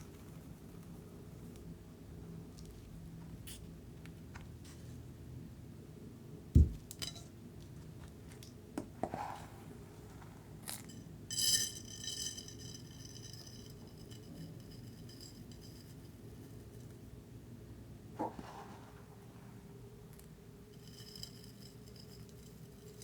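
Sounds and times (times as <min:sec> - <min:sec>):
dull thump on tabletop: 0:06.6 - 0:06.9
ringing clink: 0:10.9 - 0:16.0.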